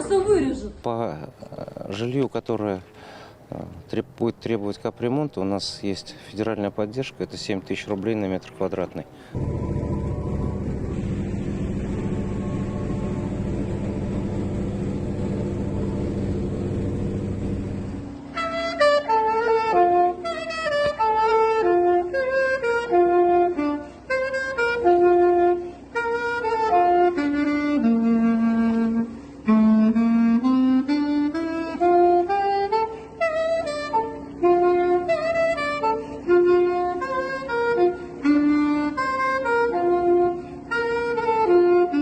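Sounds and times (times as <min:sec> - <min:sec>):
low mechanical hum: 0:00.0 - 0:42.0
saxophone melody: 0:09.1 - 0:42.0.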